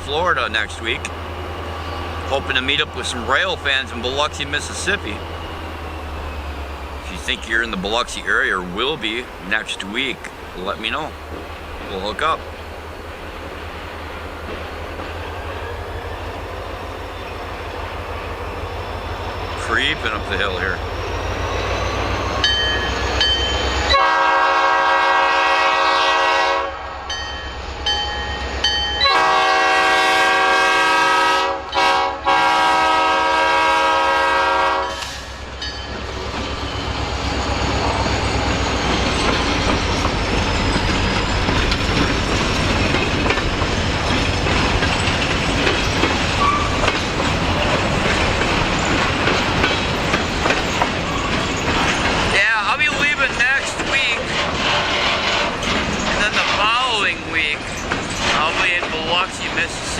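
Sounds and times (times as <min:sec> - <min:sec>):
locomotive engine rumbling: 0:00.0 - 0:59.9
train wheels clicking on rail joints: 0:00.1 - 0:24.0, 0:34.9 - 0:59.9
diesel locomotive horn: 0:23.6 - 0:27.2, 0:29.0 - 0:35.4.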